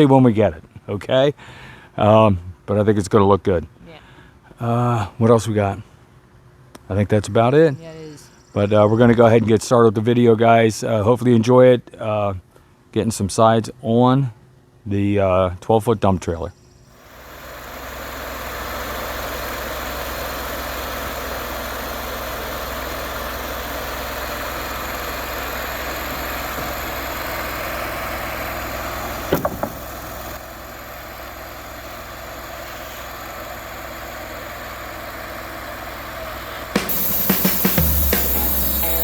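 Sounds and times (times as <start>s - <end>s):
engine idling: 17.0s - 39.0s.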